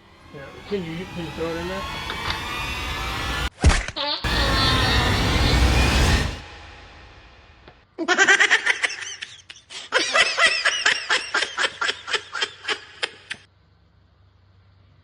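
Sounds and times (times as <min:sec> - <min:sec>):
person laughing: 0:04.0 - 0:06.4.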